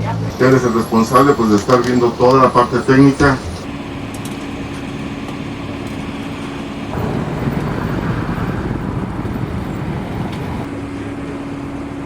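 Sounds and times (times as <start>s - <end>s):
engine hum: 0.0s - 12.0s
passing vehicles rushing: 6.6s - 12.0s.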